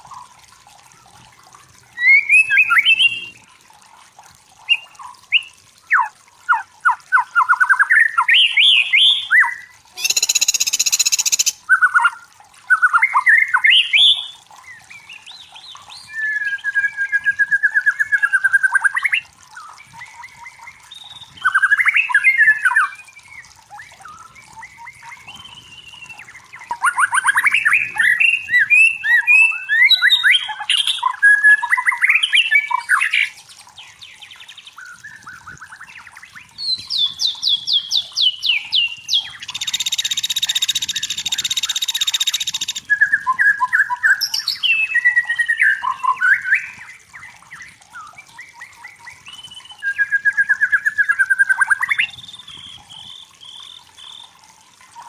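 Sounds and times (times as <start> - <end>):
bird singing whistles and trills: 2.0 - 3.4, 4.7 - 54.3.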